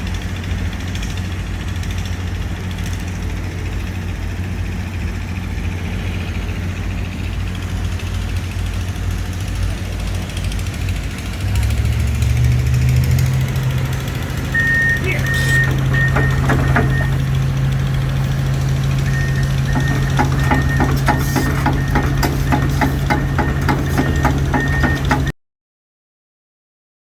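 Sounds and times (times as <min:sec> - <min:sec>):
excavator diesel engine idling: 0:00.0 - 0:25.4
high tone in short dashes: 0:14.6 - 0:16.3.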